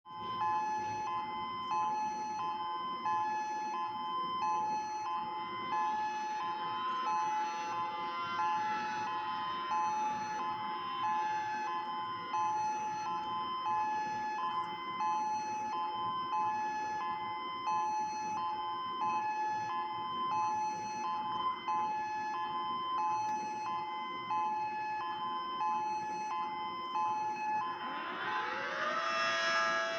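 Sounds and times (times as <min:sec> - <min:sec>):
siren alternating high and low tones: 0:00.1 - 0:29.9
faint gliding tone: 0:26.6 - 0:29.9.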